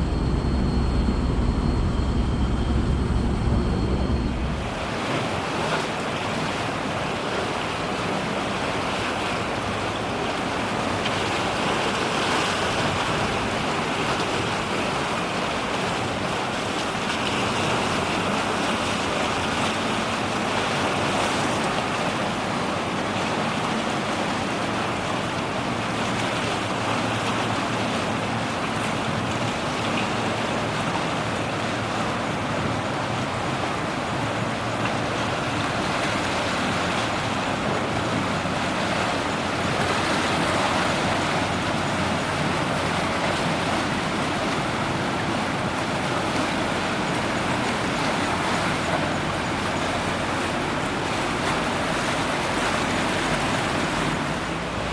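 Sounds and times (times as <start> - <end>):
faint low hum: 0.0 - 4.9
waves: 0.0 - 54.9
wind: 0.0 - 54.9.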